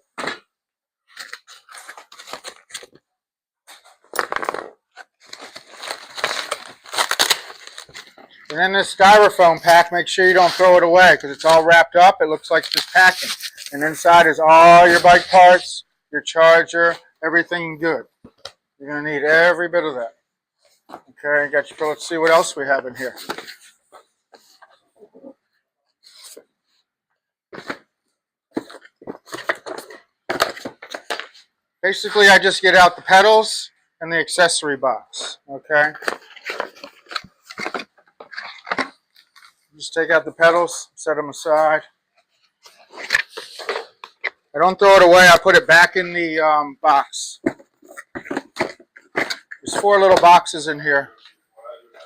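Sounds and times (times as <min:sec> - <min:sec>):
cardboard and foam rustling: 0:03.7 - 0:11.7, 0:12.6 - 0:15.6, 0:35.8 - 0:39.6, 0:47.4 - 0:50.3.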